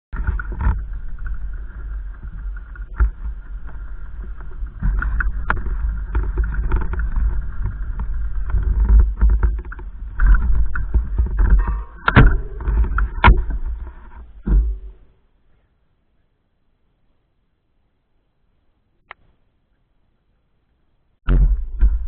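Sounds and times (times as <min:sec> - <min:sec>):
wind buffeting microphone: 0:00.1 - 0:15.0.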